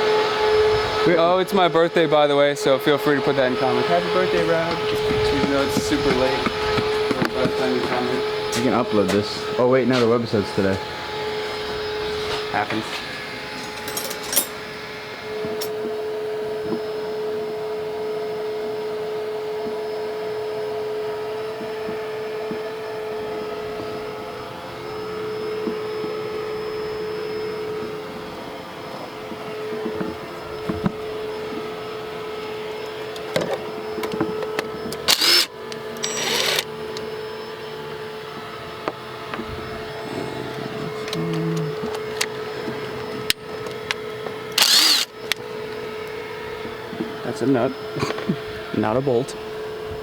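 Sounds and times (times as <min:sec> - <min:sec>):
vacuum cleaner running: 0:00.0 - 0:50.0
hand tools clicking and knocking: 0:13.7 - 0:14.6, 0:33.1 - 0:36.7, 0:43.3 - 0:45.4.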